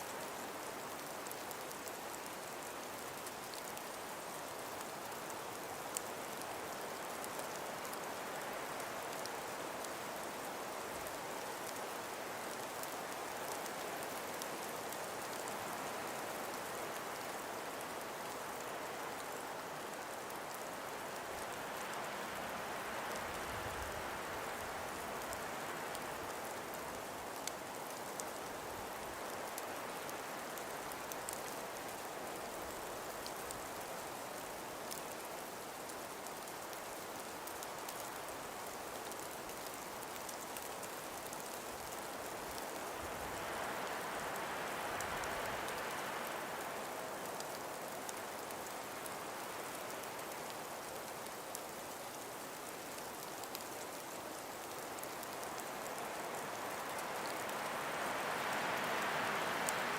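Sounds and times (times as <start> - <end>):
breeze through trees: 0.0 - 59.9
faint ticks: 0.1 - 22.1, 22.9 - 59.9.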